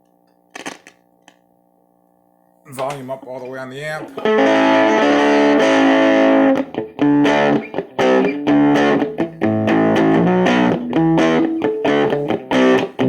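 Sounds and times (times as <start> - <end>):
electric guitar chords: 3.7 - 13.0.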